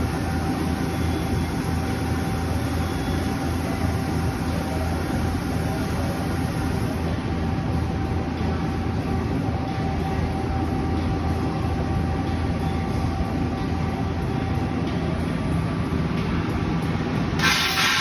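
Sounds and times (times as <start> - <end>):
faint whine: 0.0 - 17.8
lathe running with mechanical hum: 0.0 - 18.0
loud hissing noise: 17.4 - 18.0.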